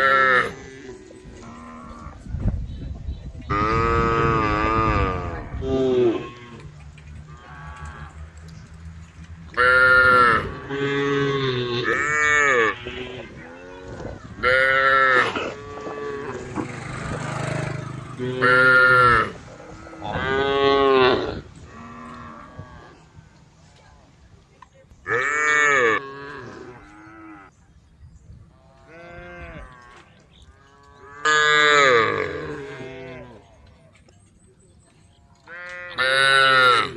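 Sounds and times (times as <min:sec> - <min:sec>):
cows mooing: 0:00.0 - 0:02.2, 0:03.5 - 0:06.7, 0:07.3 - 0:08.3, 0:09.6 - 0:23.1, 0:25.1 - 0:27.5, 0:28.6 - 0:33.6, 0:35.5 - 0:36.9.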